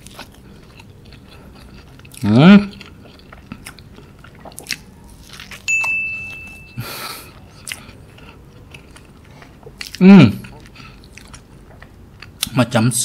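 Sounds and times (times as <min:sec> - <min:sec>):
person chewing: 0:00.0 - 0:12.6
high steady tone: 0:05.7 - 0:07.4.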